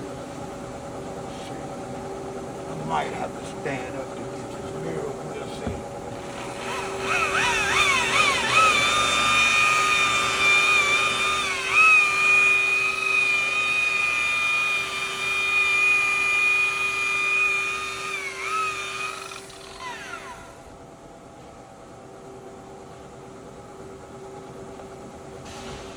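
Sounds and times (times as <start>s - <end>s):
electric buffer motor whining: 4.9s - 20.7s.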